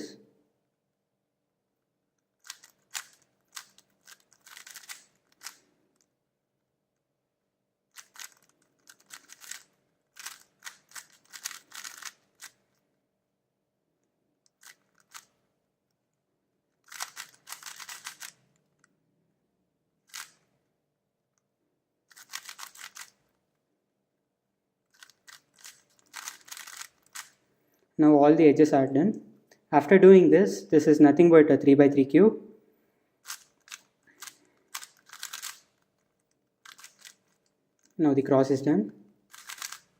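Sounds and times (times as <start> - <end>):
plastic puzzle cube clicking turns: 2.1 - 6.2, 7.9 - 12.9, 14.4 - 18.9, 20.0 - 20.5, 22.1 - 23.4, 24.9 - 27.4, 33.2 - 38.0, 39.3 - 39.9.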